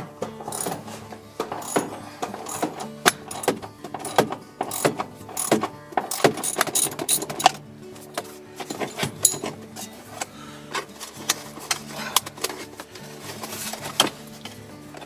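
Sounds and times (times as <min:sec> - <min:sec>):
background music: 0:00.0 - 0:15.0
ratchet wrench clicking: 0:00.5 - 0:00.8, 0:01.5 - 0:07.6.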